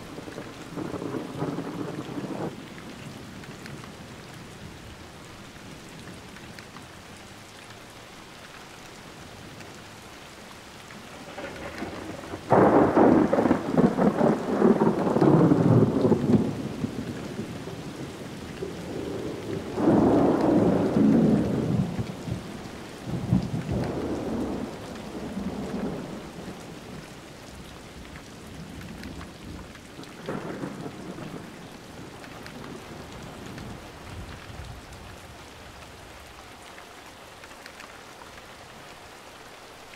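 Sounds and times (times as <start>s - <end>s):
thunder rumbling: 0.0s - 2.6s, 11.0s - 35.2s
steady rain: 0.0s - 39.9s.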